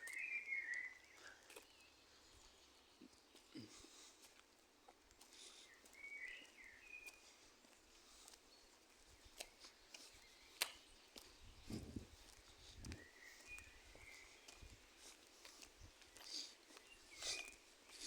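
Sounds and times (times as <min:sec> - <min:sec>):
bird chirps: 0:00.0 - 0:02.0, 0:05.7 - 0:07.3, 0:13.0 - 0:14.7.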